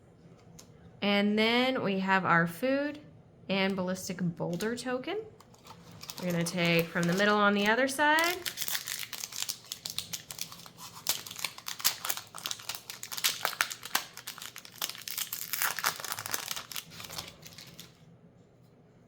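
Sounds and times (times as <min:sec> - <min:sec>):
foil wrapper crinkling: 0:05.4 - 0:18.0.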